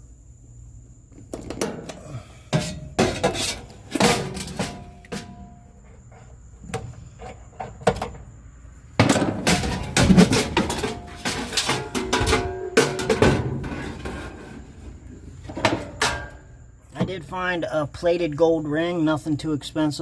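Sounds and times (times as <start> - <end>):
sheet metal parts clanking: 1.4 - 5.8, 9.0 - 16.6.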